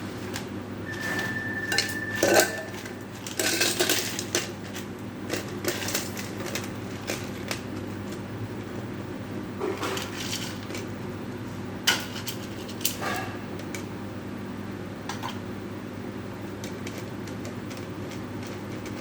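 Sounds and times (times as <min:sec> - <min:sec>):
ringing glass note: 0:00.8 - 0:03.0
glassware and utensils clinking: 0:00.9 - 0:04.2.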